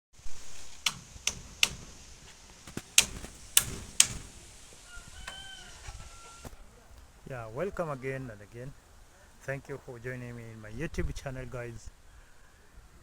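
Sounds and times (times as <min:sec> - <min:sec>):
sharp knocks: 0:00.8 - 0:05.4.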